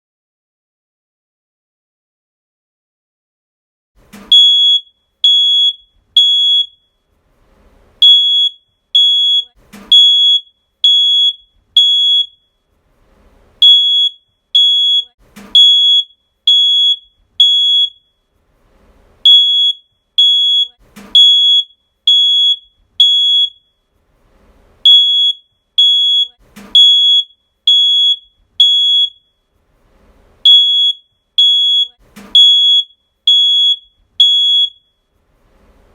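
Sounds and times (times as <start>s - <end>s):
smoke alarm beeping: 4.2s - 7.1s, 8.0s - 12.7s, 13.6s - 18.4s, 19.2s - 24.0s, 24.8s - 29.6s, 30.4s - 35.2s.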